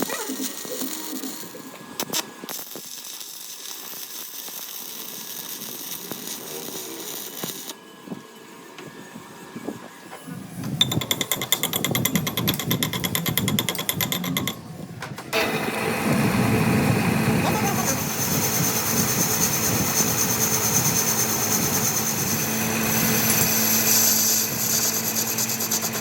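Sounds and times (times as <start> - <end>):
power tool rattling: 10.8 - 14.6.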